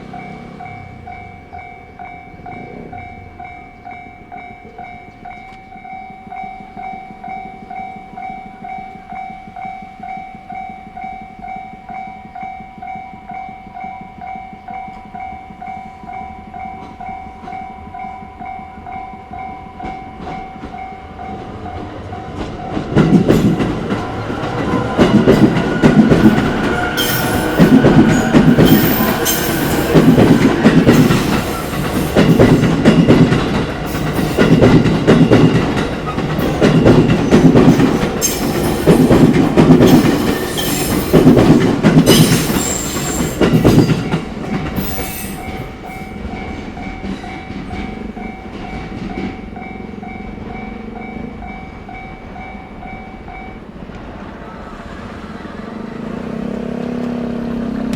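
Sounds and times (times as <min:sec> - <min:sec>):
level crossing alarm ringing: 0:00.0 - 0:41.2
train passing loudly: 0:00.0 - 0:57.9
wheels clattering over rail joints: 0:18.9 - 0:51.7.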